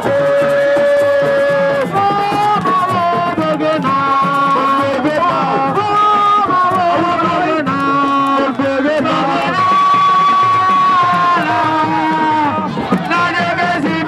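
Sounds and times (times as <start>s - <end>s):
steady drum beat: 0.0s - 14.0s.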